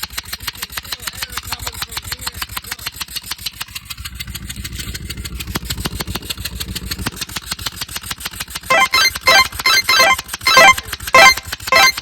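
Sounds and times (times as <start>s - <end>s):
car engine running with ticking: 0.0s - 8.7s.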